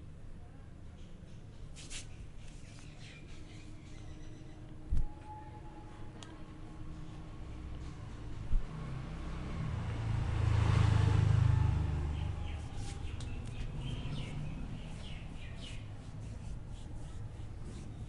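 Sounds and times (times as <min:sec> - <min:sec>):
birds chirping: 0:02.4 - 0:04.8, 0:12.1 - 0:17.4
vehicle passing with low rumble: 0:06.8 - 0:18.0.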